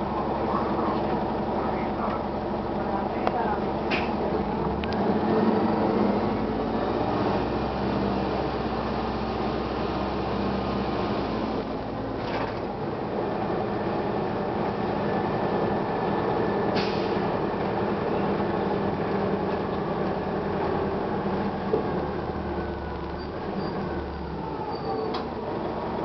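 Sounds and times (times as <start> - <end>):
bus diesel engine rumbling: 0.0 - 26.0.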